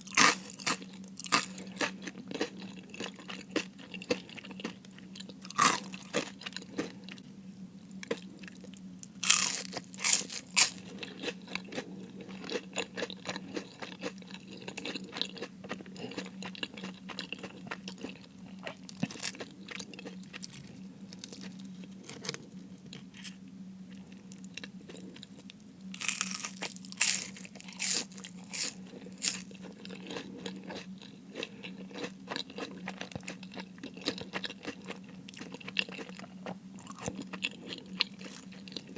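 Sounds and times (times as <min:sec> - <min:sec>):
crackling bites of crispy food: 0:08.8 - 0:11.8, 0:26.0 - 0:30.8.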